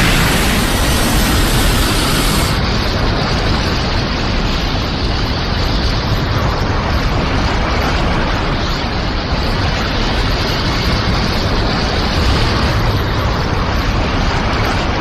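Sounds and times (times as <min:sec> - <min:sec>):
energy blast rumble: 0:00.0 - 0:04.2.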